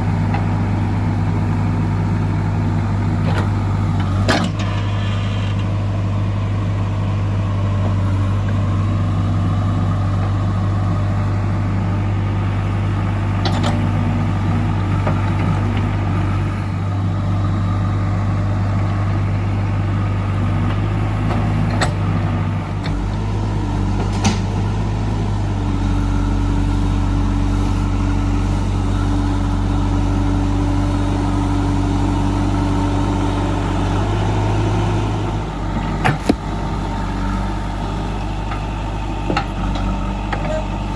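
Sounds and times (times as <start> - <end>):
diesel engine running: 0.0 - 40.9.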